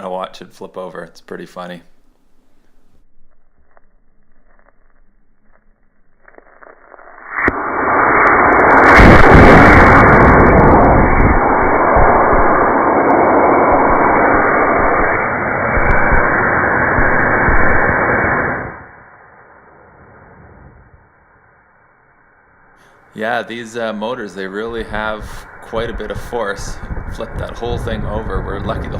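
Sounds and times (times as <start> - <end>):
rocket motor deep roar: 7.5 - 21.1, 24.6 - 28.9.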